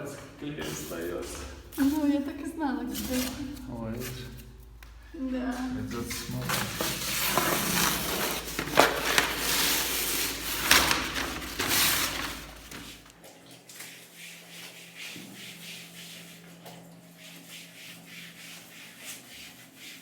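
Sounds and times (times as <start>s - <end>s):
faint scraping: 0.4s - 13.0s
wallpaper ripping: 2.9s - 4.5s, 6.0s - 13.1s.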